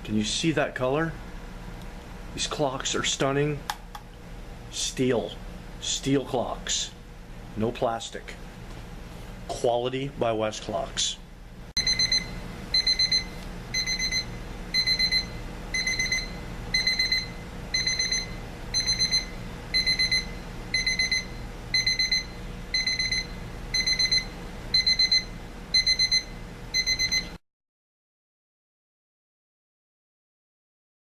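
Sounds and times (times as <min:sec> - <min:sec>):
alarm clock beeping: 0:11.8 - 0:27.3.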